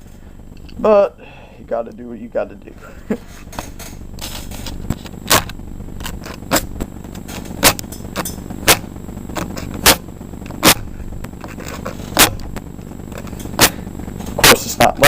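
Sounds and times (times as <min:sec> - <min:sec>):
match scratching on striker: 0:07.4 - 0:10.0, 0:11.4 - 0:12.4.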